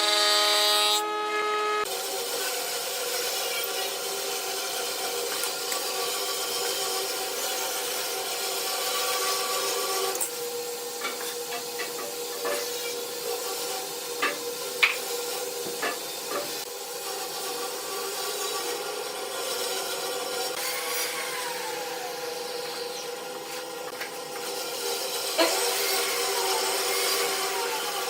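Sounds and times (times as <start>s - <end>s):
wood lathe whining: 0.0s - 28.0s.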